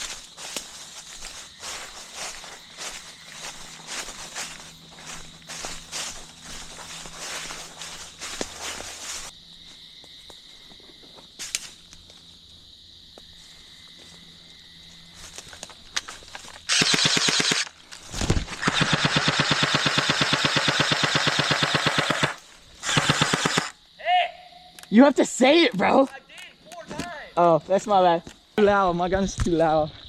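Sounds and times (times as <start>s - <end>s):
airsoft gun automatic fire: 16.7s - 17.7s, 18.5s - 23.7s.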